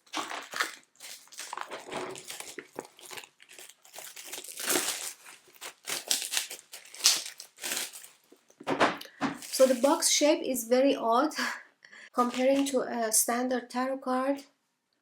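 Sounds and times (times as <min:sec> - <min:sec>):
plastic tearing: 0:00.0 - 0:08.6, 0:09.4 - 0:10.1, 0:12.2 - 0:12.8
plastic wrapping crinkling: 0:00.0 - 0:10.2, 0:12.2 - 0:12.8.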